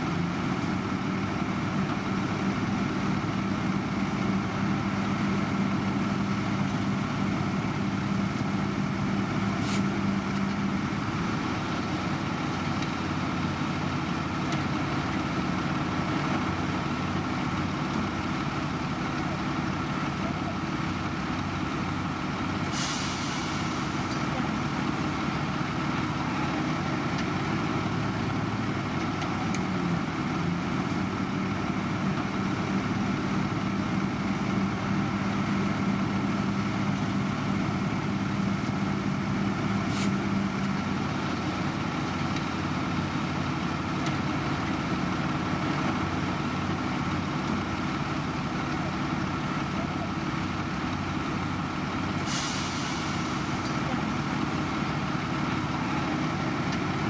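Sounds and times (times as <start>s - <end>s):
heavy diesel engines running: 0.0s - 57.0s
air hiss: 52.2s - 53.6s.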